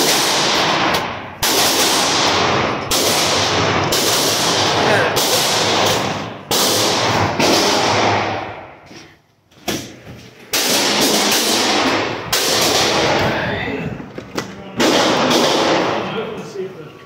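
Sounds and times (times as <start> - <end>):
echoing gunshots: 0.0 - 8.8, 10.5 - 13.6, 14.8 - 16.3.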